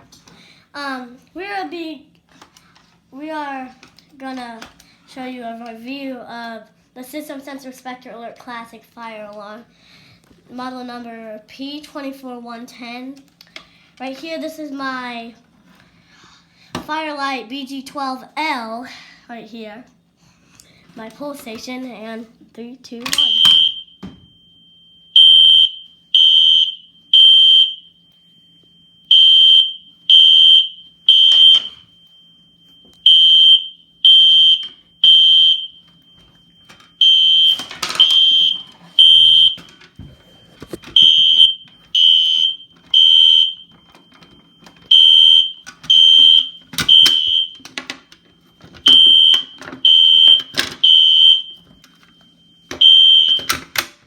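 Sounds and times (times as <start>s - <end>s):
fire alarm horn blasts: 23.0s - 39.7s, 40.9s - 53.8s.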